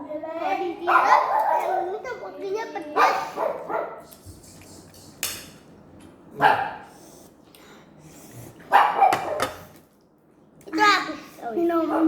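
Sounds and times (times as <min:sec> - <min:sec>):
dog barking: 0:00.8 - 0:02.0, 0:03.0 - 0:04.0, 0:06.4 - 0:06.9, 0:08.7 - 0:09.6.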